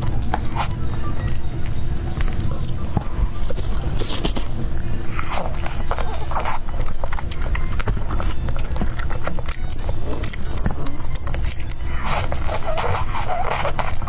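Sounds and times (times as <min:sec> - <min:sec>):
chewing and biting food: 0:00.0 - 0:14.0.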